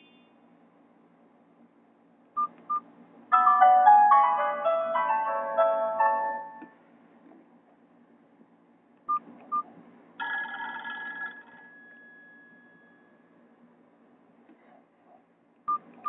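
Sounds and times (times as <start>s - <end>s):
electronic ringtone melody: 3.3s - 6.7s
ringtone bright chord: 3.3s - 6.8s.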